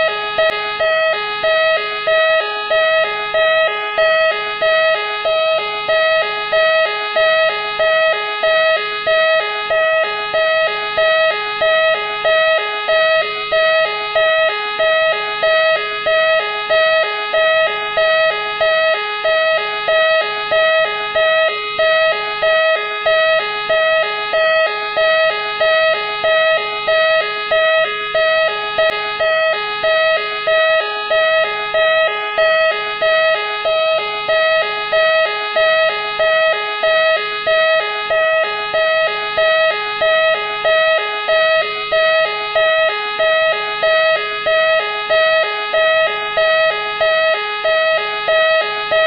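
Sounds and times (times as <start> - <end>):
police siren two-note wail: 0.0 - 49.0.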